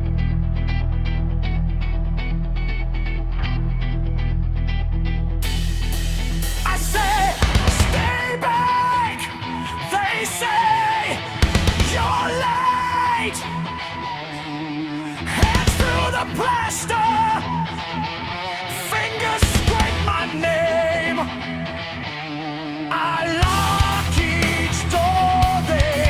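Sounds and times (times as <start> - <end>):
loud rock music: 0.0 - 26.0
heavy drum hits: 7.4 - 8.1.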